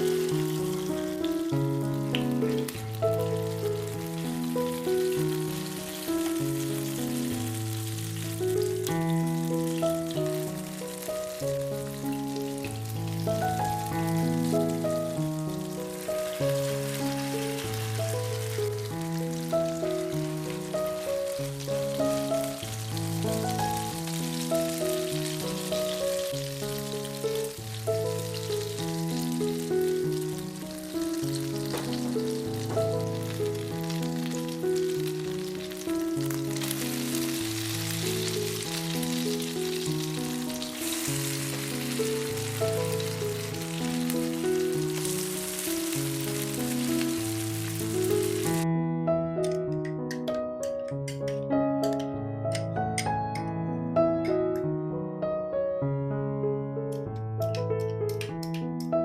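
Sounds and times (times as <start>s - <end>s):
food sizzling in oil: 0.0s - 48.6s
background music melodic notes: 0.0s - 59.0s.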